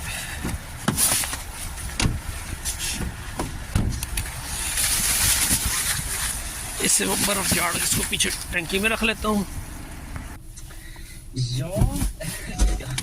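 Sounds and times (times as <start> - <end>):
steady low rumble: 0.0 - 13.0
dull knocks: 2.0 - 2.3.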